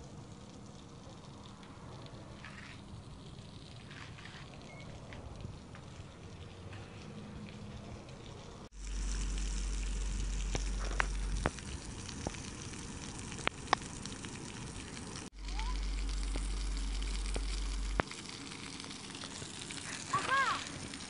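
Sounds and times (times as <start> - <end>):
low rumble: 7.5 - 13.4, 15.2 - 18.0.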